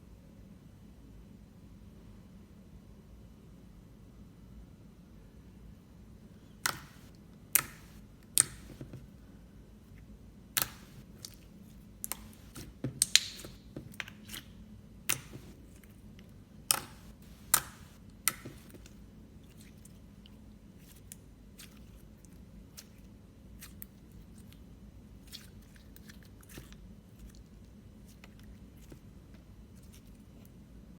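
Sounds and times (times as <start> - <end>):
slime clicks and pops: 6.7 - 8.8, 10.6 - 11.4, 12.0 - 14.1, 15.1 - 15.6, 16.7 - 18.8.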